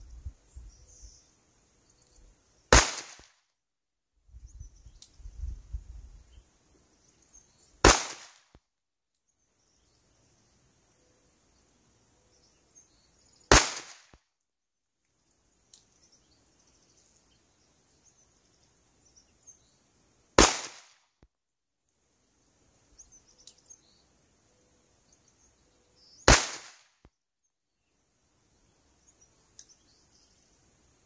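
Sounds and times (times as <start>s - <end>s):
pistol shots: 2.7s - 3.3s, 7.9s - 8.4s, 13.5s - 14.1s, 20.4s - 21.0s, 26.3s - 26.9s.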